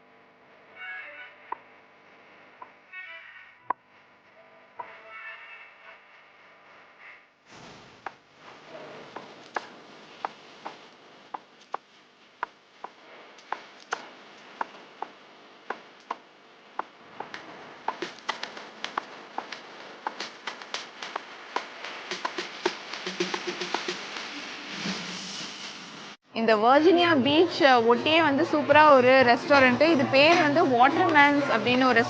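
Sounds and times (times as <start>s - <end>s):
background hiss: 3.9s - 26.2s
faint music: 26.3s - 32.0s.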